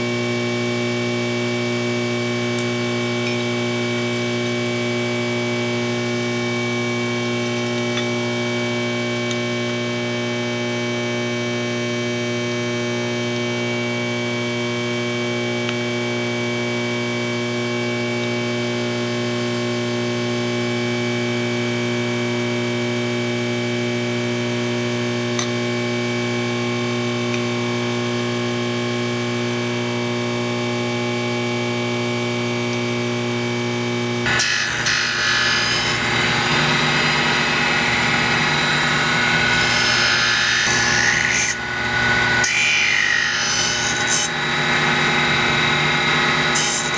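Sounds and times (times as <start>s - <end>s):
surface grinder humming and whining: 32.0s - 46.9s.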